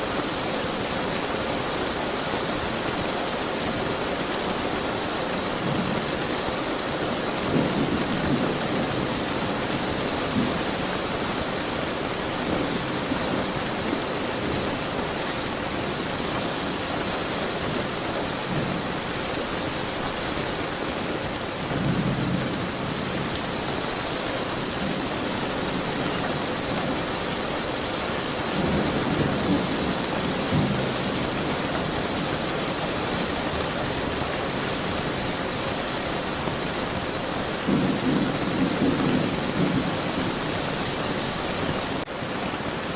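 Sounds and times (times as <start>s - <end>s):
steady rain: 0.0s - 42.9s
rolling thunder: 7.4s - 11.0s, 37.5s - 42.0s.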